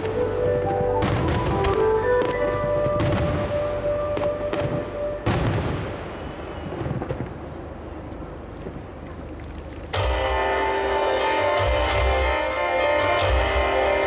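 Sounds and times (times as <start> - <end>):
music: 0.0 - 5.8, 9.9 - 14.0
fireworks rumble and crackle: 0.0 - 14.0.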